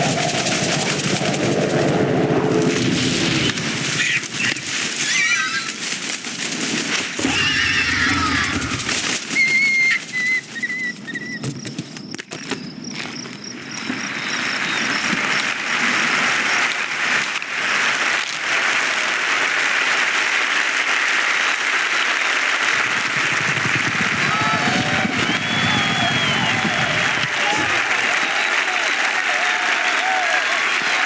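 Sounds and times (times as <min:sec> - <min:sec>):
crowd cheering and clapping: 0:00.0 - 0:01.9, 0:07.2 - 0:09.9, 0:15.3 - 0:31.0
whistled chirps: 0:07.2 - 0:12.8, 0:23.4 - 0:28.9.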